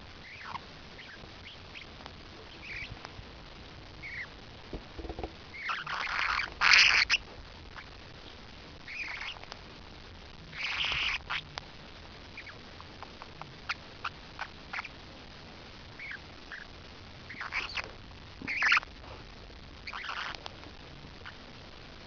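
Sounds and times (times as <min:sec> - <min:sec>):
parrotlet chirps and calls: 0:00.2 - 0:03.0, 0:04.0 - 0:04.4, 0:05.0 - 0:08.0, 0:08.8 - 0:09.5, 0:10.5 - 0:11.5, 0:12.3 - 0:12.6, 0:13.6 - 0:15.0, 0:15.9 - 0:18.9, 0:19.8 - 0:20.5, 0:21.2 - 0:21.4.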